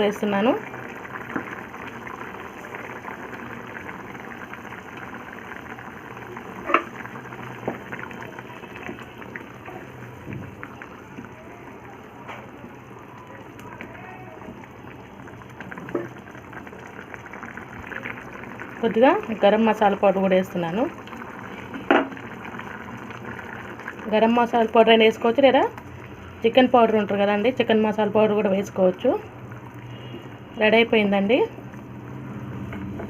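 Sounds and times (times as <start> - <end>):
curry bubbling in a pot: 0.0 - 33.0.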